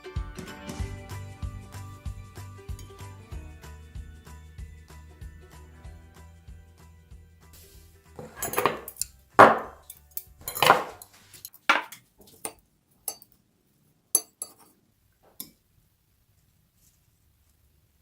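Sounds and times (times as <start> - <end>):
utensils clattering against dishes: 8.2 - 9.8, 10.4 - 12.0.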